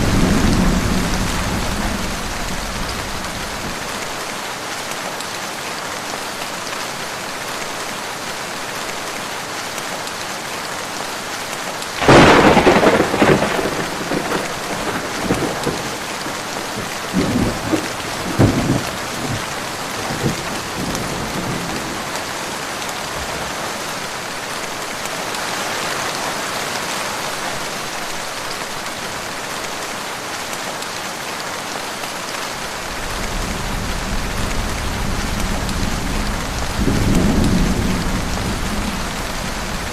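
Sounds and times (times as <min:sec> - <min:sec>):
thunderclap: 0:00.0 - 0:03.8, 0:12.0 - 0:16.0, 0:33.0 - 0:39.9
distant thunder rumble: 0:00.0 - 0:03.9, 0:12.0 - 0:22.0, 0:32.8 - 0:39.9
rolling thunder: 0:00.0 - 0:03.9, 0:12.0 - 0:22.0, 0:32.9 - 0:39.9
heavy rain: 0:00.0 - 0:39.9.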